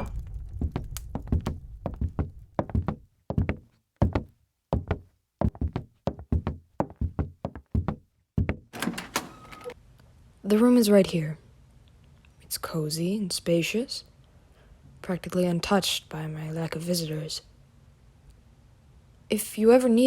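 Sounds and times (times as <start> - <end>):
footsteps on wooden floor: 0.6 - 8.6.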